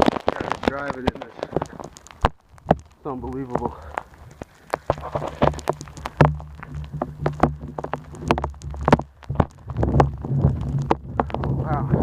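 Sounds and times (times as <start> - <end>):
snow pattering: 0.0 - 12.0
wind buffeting microphone: 2.5 - 12.0.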